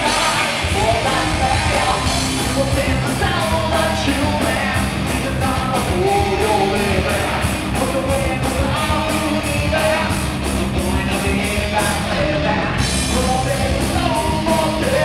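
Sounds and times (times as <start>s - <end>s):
shouted vocals: 0.0s - 10.2s
drums and cymbal beat: 0.0s - 15.0s
guitars: 0.0s - 15.0s.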